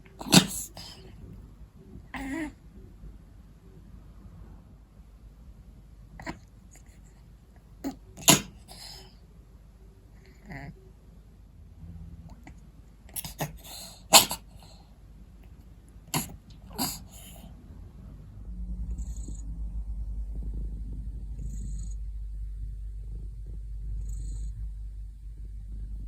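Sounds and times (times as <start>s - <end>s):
cat snorting: 0.0s - 3.0s, 6.1s - 9.3s, 10.1s - 10.8s, 12.0s - 18.2s, 18.8s - 22.1s, 23.0s - 24.7s
low fluttering rumble: 17.5s - 26.0s.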